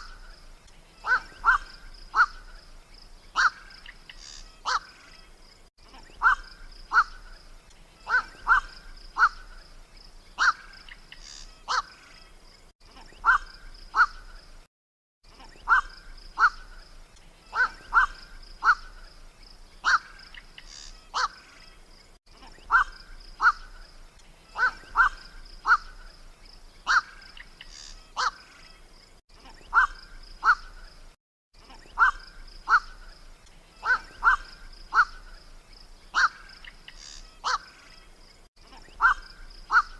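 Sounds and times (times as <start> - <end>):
heron calls: 1.0 - 2.6, 3.3 - 5.0, 6.0 - 7.3, 8.0 - 9.6, 10.4 - 12.0, 13.0 - 14.3, 15.4 - 16.8, 17.5 - 19.0, 19.8 - 21.5, 22.5 - 23.8, 24.5 - 26.2, 26.8 - 28.5, 29.4 - 30.8, 31.7 - 33.1, 33.7 - 35.4, 36.1 - 37.8, 38.7 - 39.9.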